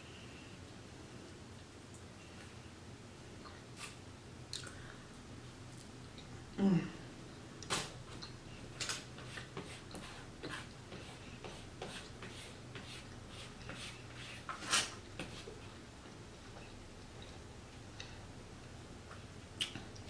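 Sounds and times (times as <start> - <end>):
chewing with wet mouth clicks: 4.5 - 4.8, 19.1 - 20.0.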